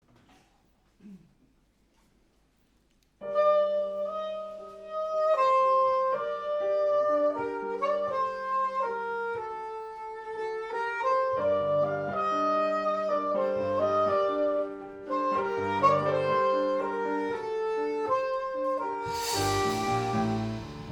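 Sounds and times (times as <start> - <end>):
saxophone melody: 3.3 - 20.9
piano chords: 19.0 - 20.9
low bass notes: 19.1 - 20.9.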